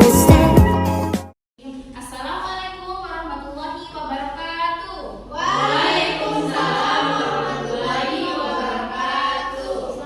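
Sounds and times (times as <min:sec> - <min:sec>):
children singing together: 0:05.3 - 0:10.0.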